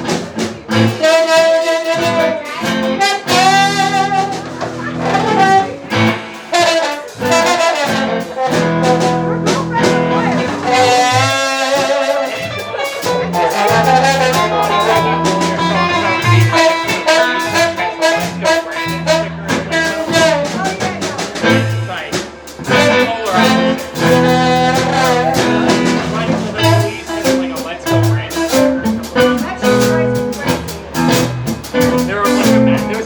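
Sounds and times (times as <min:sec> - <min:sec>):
bass: 0:00.0 - 0:33.0
live jazz band playing: 0:00.0 - 0:33.0
steady drum beat: 0:00.0 - 0:33.0
horns holding sustained notes: 0:06.5 - 0:20.8.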